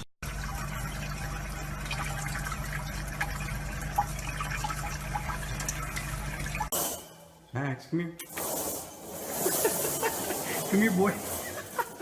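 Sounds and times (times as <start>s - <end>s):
water trickling and dripping: 0.2s - 6.7s.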